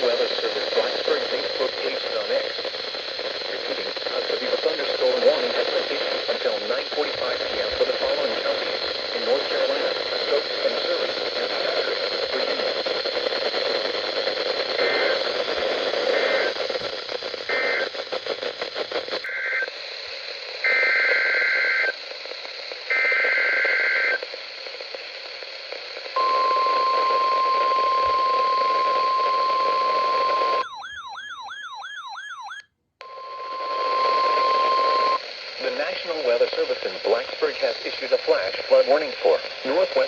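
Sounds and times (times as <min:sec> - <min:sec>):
radio hiss: 0:00.0 - 0:30.6, 0:33.0 - 0:40.0
steady warning alarm tone: 0:26.2 - 0:35.2.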